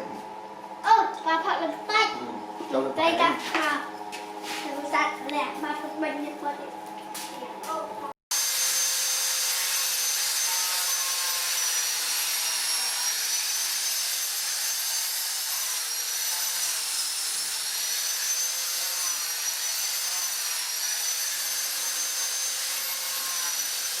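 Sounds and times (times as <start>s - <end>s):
power tool whining on wood: 8.3s - 24.0s.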